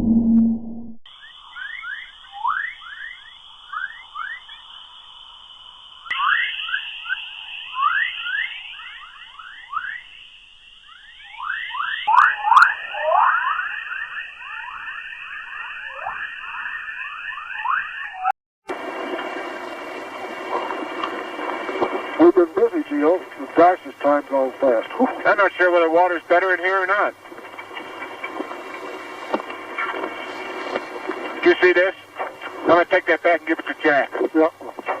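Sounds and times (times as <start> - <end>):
steady high hiss: 1.1 - 16.6, 18.7 - 35.0.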